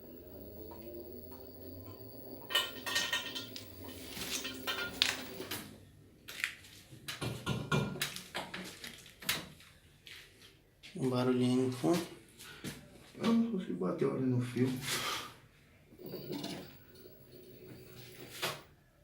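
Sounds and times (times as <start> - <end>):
washer-dryer humming: 0.0 - 5.7, 16.0 - 18.6
metallic clinks and knocks: 2.4 - 5.5.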